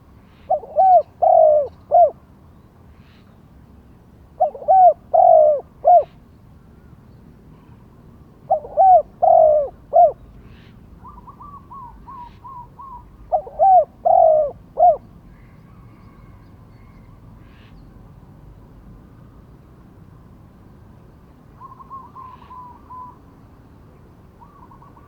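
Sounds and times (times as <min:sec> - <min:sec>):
dove cooing: 0:00.5 - 0:02.2, 0:04.4 - 0:06.2, 0:08.5 - 0:10.2, 0:11.0 - 0:15.0.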